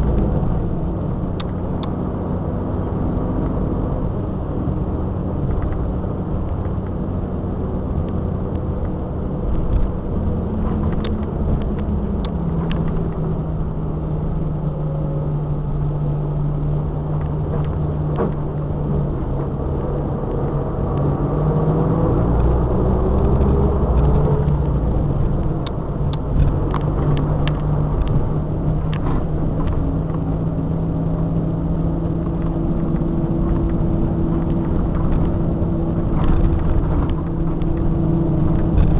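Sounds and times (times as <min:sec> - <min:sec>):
clicks and rattles: 0:10.6 - 0:13.4, 0:36.0 - 0:38.9.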